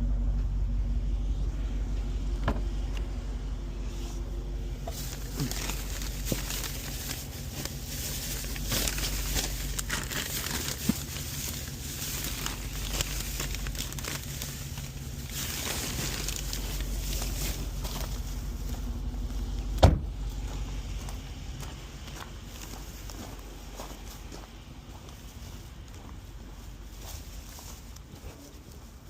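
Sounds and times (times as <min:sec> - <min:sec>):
low hum: 0:00.0 - 0:28.2
plastic bags crinkling: 0:04.9 - 0:18.7.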